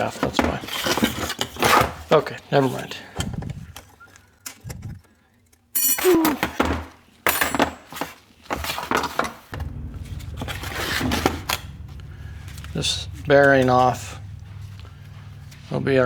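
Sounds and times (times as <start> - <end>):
low steady hum: 9.6 - 16.0.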